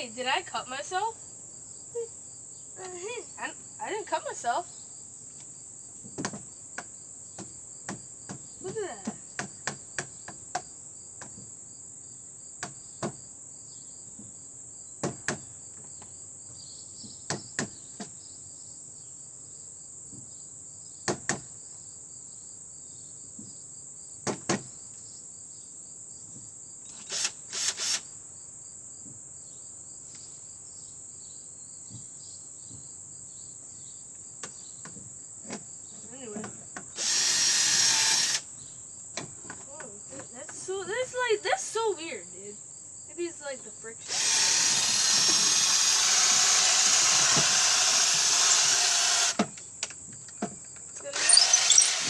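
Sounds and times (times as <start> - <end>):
crickets chirping: 0.0 - 52.0
power drill running: 26.9 - 28.0, 37.0 - 38.4, 44.0 - 49.4, 51.1 - 52.0.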